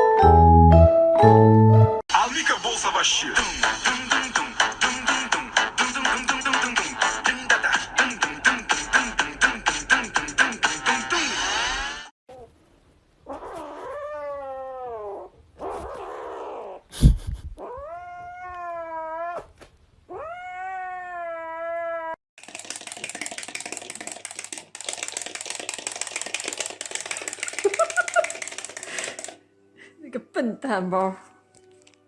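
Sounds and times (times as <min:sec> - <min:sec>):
cat meowing: 0:17.6 - 0:19.5, 0:20.1 - 0:22.2.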